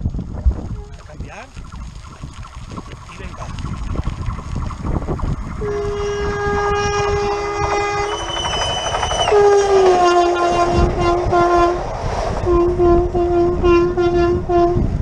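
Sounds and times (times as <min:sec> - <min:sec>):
passing train rumble: 0:00.3 - 0:15.0
train horn blast: 0:05.6 - 0:08.1, 0:09.2 - 0:11.8, 0:12.4 - 0:14.9.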